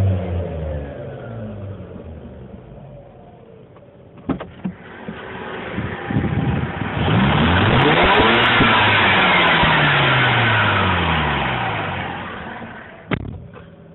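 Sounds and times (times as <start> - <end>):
rotary engine revving: 4.4 - 13.1.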